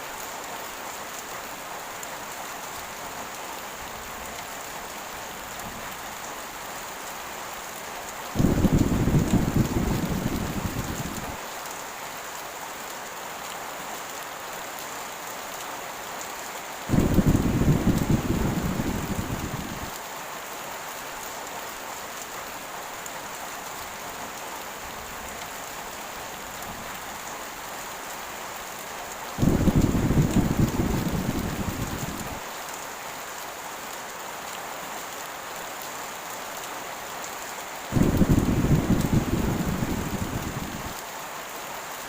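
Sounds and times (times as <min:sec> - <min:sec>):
heavy rain: 0:00.0 - 0:42.0
thunder rumbling: 0:08.4 - 0:11.4, 0:16.9 - 0:19.9, 0:29.4 - 0:32.4, 0:38.0 - 0:41.0.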